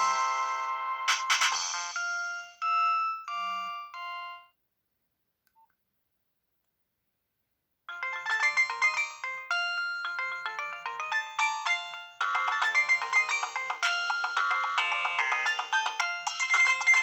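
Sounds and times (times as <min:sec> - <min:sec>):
electronic ringtone melody: 0:00.0 - 0:04.5, 0:07.9 - 0:17.0.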